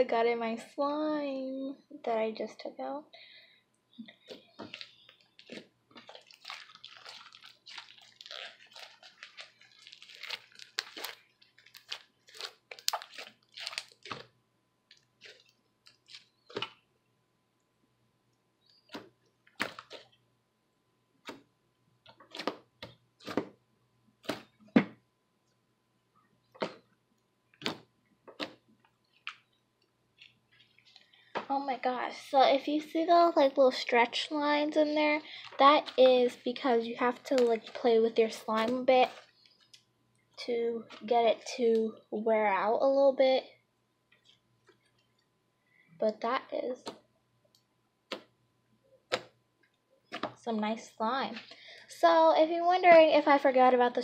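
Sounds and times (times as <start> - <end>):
slime squelching and popping: 4.0 - 16.9, 18.7 - 20.2, 27.6 - 29.6, 35.3 - 37.9, 48.0 - 48.4, 49.0 - 50.4.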